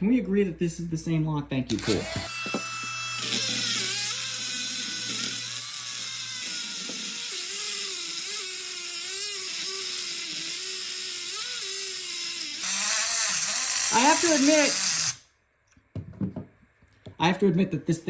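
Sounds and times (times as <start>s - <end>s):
rotary tool grinding metal: 1.7s - 15.3s.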